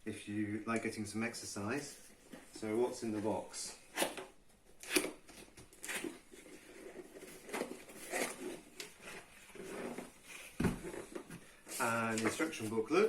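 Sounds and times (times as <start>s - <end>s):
cardboard box rustling and scraping: 5.8s - 12.4s.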